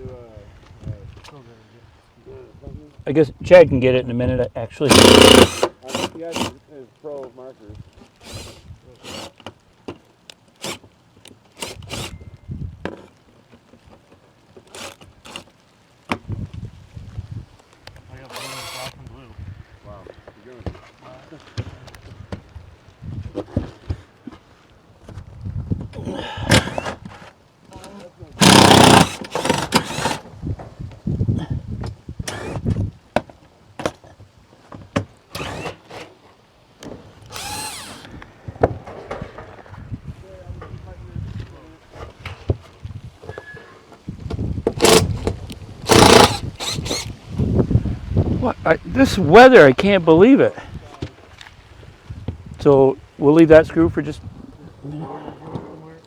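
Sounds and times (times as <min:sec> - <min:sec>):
cordless drill driving screws: 0:04.9 - 0:06.6, 0:08.2 - 0:09.4, 0:10.6 - 0:10.8, 0:11.6 - 0:12.1, 0:14.7 - 0:15.5, 0:18.3 - 0:19.0, 0:26.5 - 0:27.0, 0:28.4 - 0:30.2, 0:32.2 - 0:32.6, 0:35.3 - 0:36.1, 0:37.3 - 0:38.1, 0:44.8 - 0:45.3, 0:45.9 - 0:47.2.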